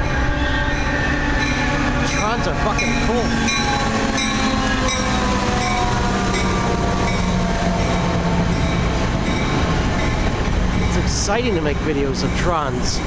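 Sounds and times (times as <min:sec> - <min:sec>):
train rumbling on rails: 0:00.0 - 0:13.0.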